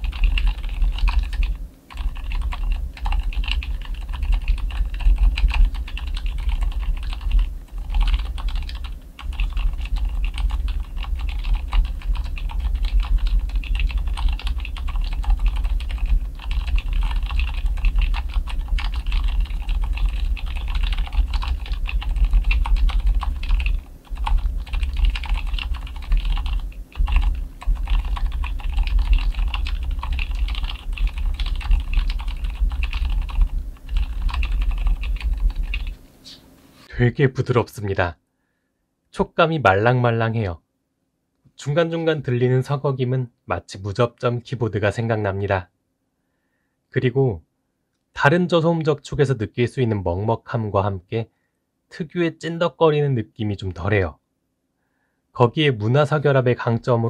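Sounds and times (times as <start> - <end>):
muffled mechanical keyboard typing: 0.0 - 36.0.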